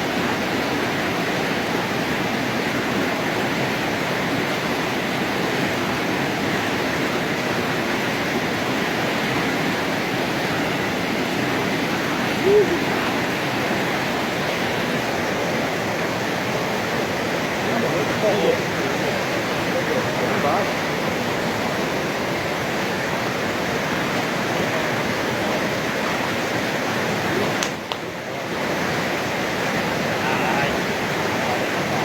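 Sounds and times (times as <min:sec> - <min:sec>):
whitewater rushing: 0:00.0 - 0:32.0
brief voice-like cry: 0:12.4 - 0:13.0.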